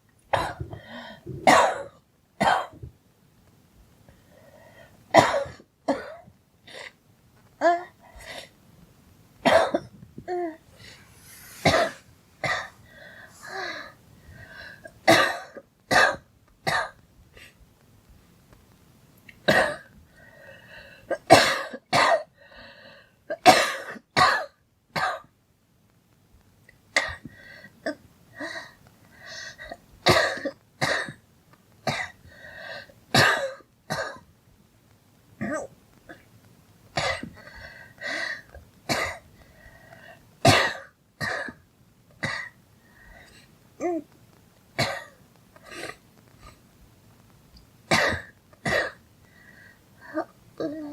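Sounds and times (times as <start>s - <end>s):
girl coughing: 0.4s - 2.9s, 5.2s - 6.9s, 11.7s - 12.7s, 21.2s - 22.3s, 23.3s - 25.3s, 33.2s - 34.2s, 47.9s - 49.0s.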